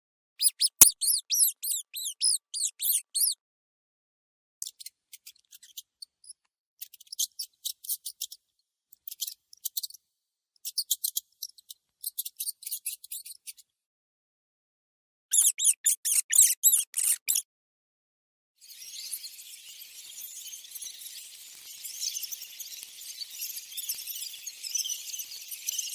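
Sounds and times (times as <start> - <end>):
mouse squeaking: 0.4 - 3.4, 15.3 - 17.5, 21.9 - 25.9.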